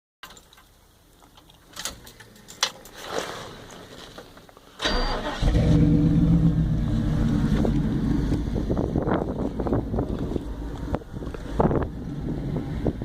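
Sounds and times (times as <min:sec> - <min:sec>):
engine cranking and starting: 0:04.8 - 0:08.5.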